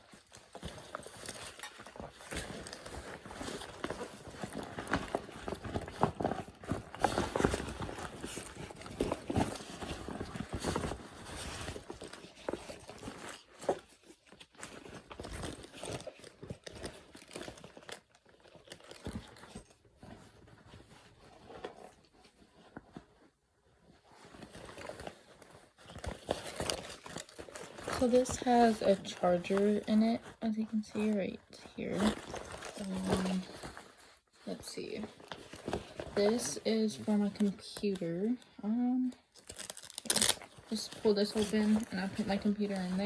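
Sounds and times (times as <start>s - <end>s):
backpack crinkling and rustling: 0.0s - 43.0s.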